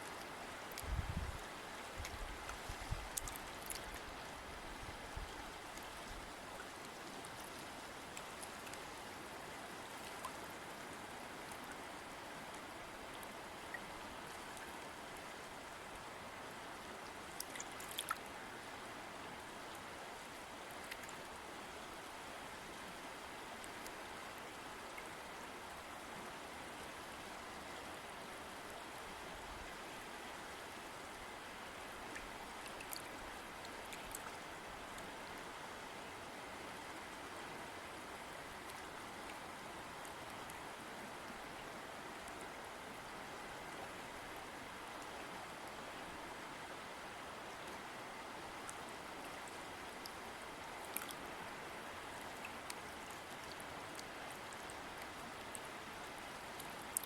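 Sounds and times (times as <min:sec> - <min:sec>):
small water splashes and drips: 0:00.0 - 0:11.9, 0:17.0 - 0:18.4, 0:20.6 - 0:21.8, 0:32.0 - 0:35.5, 0:48.5 - 0:57.0
river water flowing: 0:00.0 - 0:57.0.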